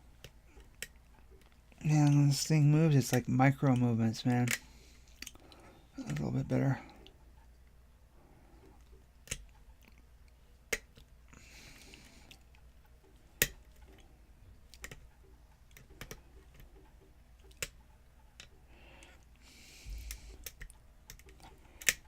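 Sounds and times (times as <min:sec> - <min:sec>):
lock pick metallic clicks: 0:20.1 - 0:22.0.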